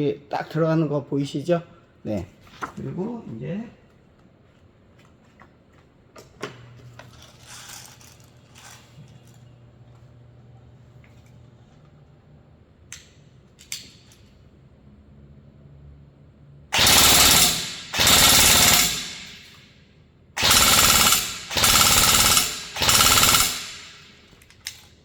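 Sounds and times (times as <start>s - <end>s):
airsoft rifle full-auto bursts: 16.8s - 19.4s, 20.4s - 24.1s.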